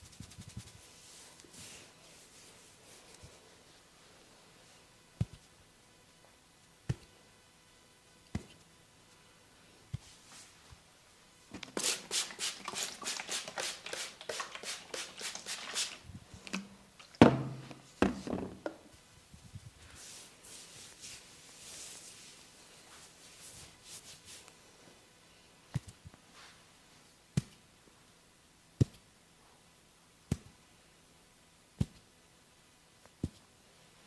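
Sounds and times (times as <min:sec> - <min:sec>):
scratching strokes through hair: 0:00.0 - 0:05.6, 0:11.6 - 0:16.1, 0:19.4 - 0:24.6.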